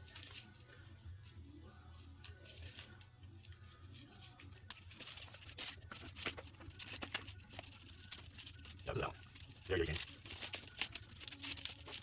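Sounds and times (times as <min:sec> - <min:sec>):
toothbrush scrubbing chain: 0:07.4 - 0:12.0.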